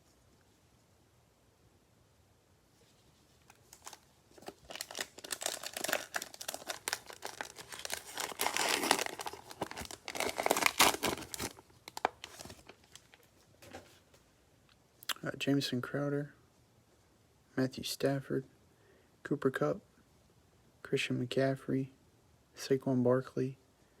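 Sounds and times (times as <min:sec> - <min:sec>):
cellophane wrapper tearing and crinkling: 0:03.5 - 0:13.2.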